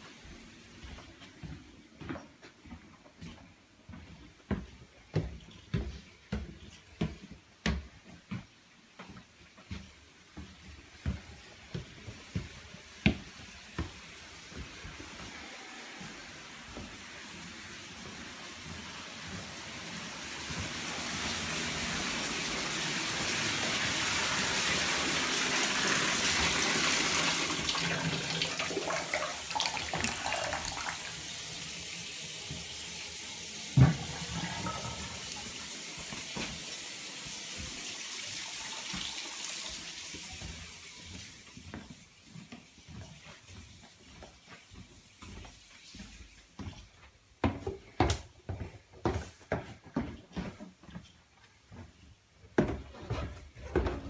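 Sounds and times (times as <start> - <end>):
water running from a tap: 16.7 - 44.3.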